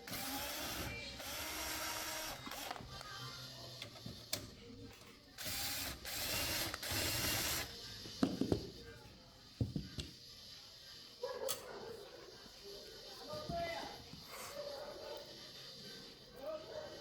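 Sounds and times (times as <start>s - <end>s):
screwdriver rasping on screws: 5.4s - 7.7s.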